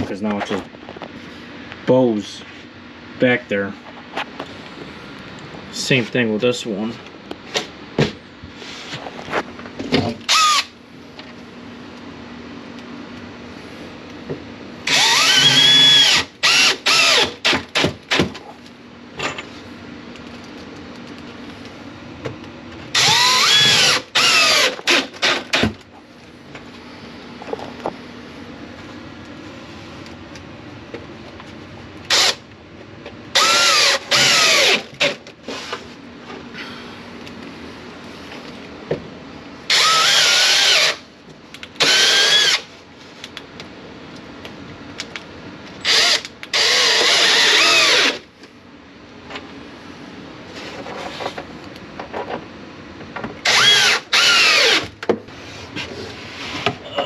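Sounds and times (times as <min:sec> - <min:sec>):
power drill driving screws: 0:10.3 - 0:10.7, 0:14.9 - 0:18.2, 0:22.9 - 0:25.7, 0:32.1 - 0:32.4, 0:33.4 - 0:35.7, 0:39.7 - 0:41.0, 0:41.8 - 0:42.7, 0:45.8 - 0:48.2, 0:53.4 - 0:54.9.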